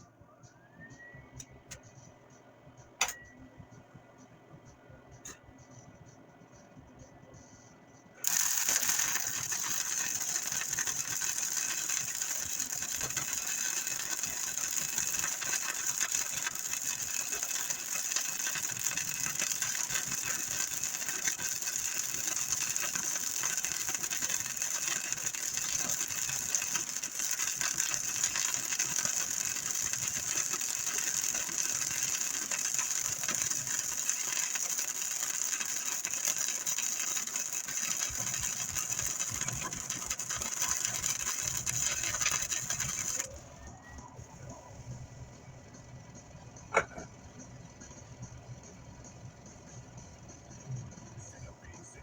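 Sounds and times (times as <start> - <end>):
power tool mechanical clatter: 8.2 - 43.5.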